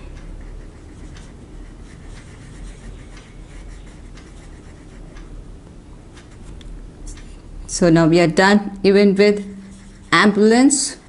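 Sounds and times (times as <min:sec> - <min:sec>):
low steady hum: 0:00.0 - 0:11.0
colouring tool scratching on paper: 0:00.3 - 0:05.2, 0:09.2 - 0:11.0.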